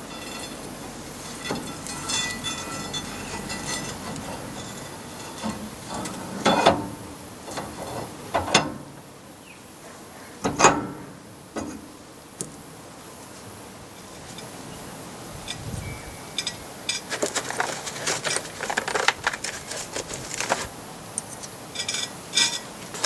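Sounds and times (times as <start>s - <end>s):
metal tools clanking: 0.0s - 6.7s, 15.4s - 23.0s.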